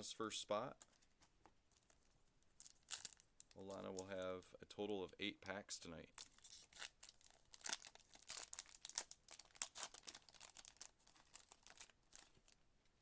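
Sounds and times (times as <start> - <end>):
wrapper tearing and crinkling: 2.6 - 4.2, 6.1 - 12.6.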